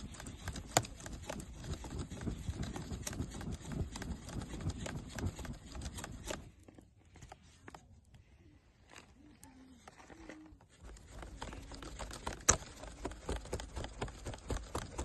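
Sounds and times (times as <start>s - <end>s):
campfire crackling and popping: 0.0s - 6.5s.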